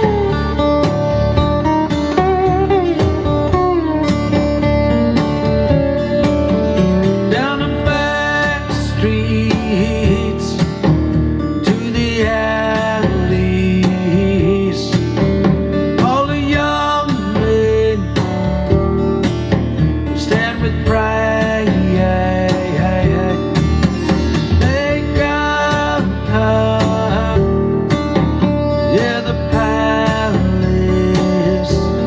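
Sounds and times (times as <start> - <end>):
country guitar music: 0.0 - 32.0.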